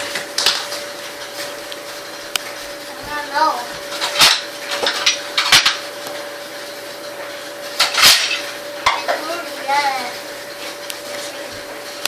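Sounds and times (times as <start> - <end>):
dishes and cutlery clattering: 3.9 - 5.8, 7.8 - 9.2.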